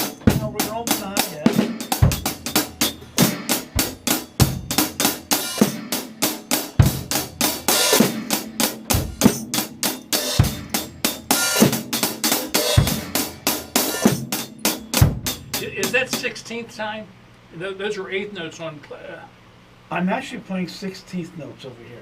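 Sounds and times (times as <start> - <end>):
bass drum: 0.0 - 6.0, 6.7 - 16.4
snare drum: 0.0 - 16.4.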